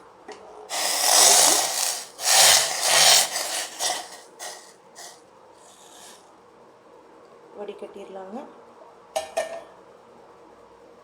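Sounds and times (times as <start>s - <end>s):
cooking pan scraping a hard surface: 0.7s - 5.2s.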